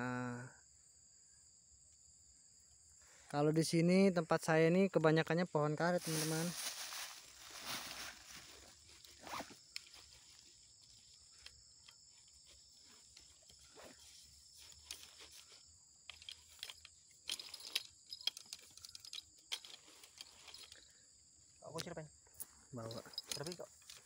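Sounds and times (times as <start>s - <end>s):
night insects chirring: 0.0s - 24.0s
sharp ticks and crackles: 9.7s - 20.9s, 21.6s - 24.0s.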